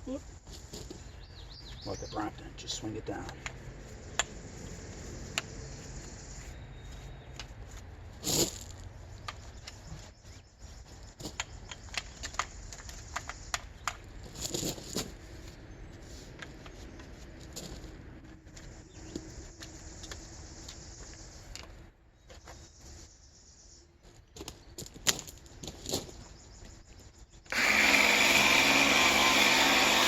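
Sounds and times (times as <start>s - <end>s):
sharp clicks: 11.3s - 14.1s.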